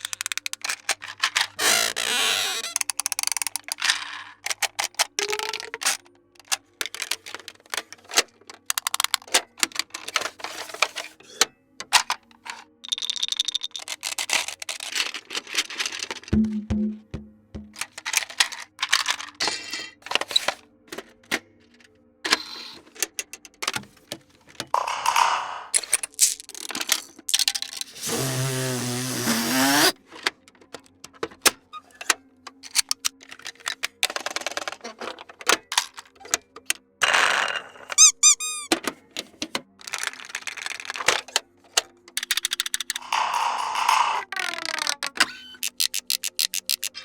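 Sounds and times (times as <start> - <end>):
toy clicks and rattles: 0.0 - 1.9, 2.5 - 11.0, 12.0 - 16.4, 17.8 - 20.6, 24.8 - 28.2, 32.6 - 38.8, 39.8 - 47.0
warbling buzzy toy sound: 43.0 - 46.9.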